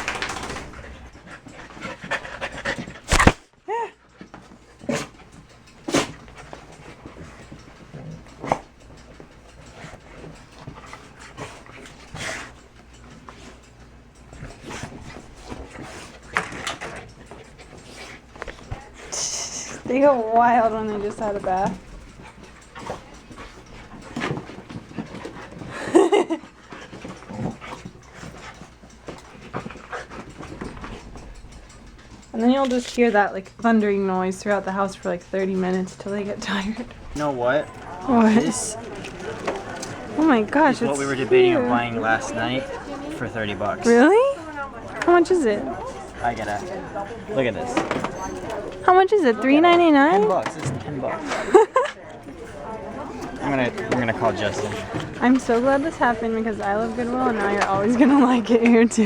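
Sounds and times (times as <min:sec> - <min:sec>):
dog panting hard: 0:00.0 - 0:03.4, 0:04.0 - 0:59.0
dog whine: 0:45.6 - 0:48.9.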